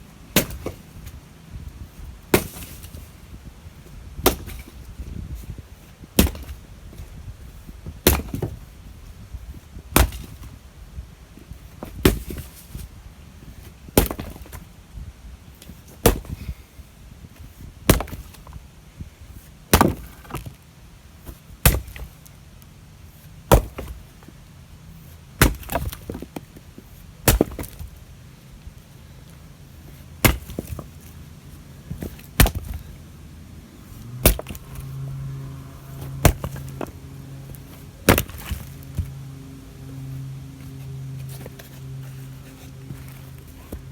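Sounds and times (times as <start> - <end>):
blade chopping into wood: 0.4 - 0.8, 2.3 - 3.0, 4.2 - 4.7, 6.2 - 6.6, 8.0 - 8.6, 10.0 - 10.5, 14.0 - 14.6, 16.0 - 16.4, 19.7 - 20.5, 21.6 - 22.1, 23.5 - 24.0, 25.4 - 26.2, 27.2 - 27.9, 30.2 - 30.9, 32.0 - 32.8, 34.0 - 35.0, 35.9 - 39.1.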